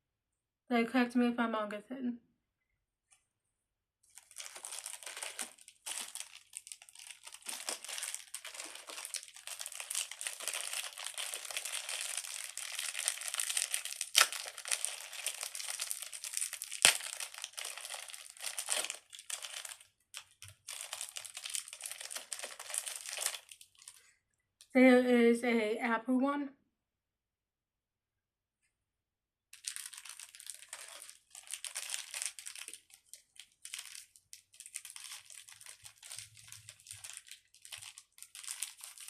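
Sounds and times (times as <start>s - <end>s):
plastic packaging crinkling: 4.0s - 24.1s, 29.6s - 39.0s.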